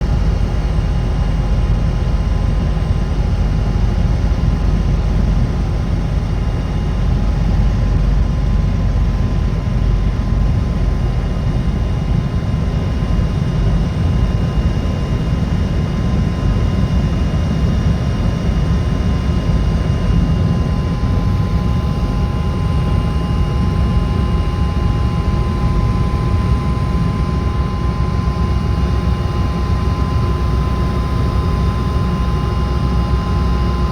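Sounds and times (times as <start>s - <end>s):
helicopter rumble: 0.0s - 33.9s
high whine: 16.4s - 33.9s.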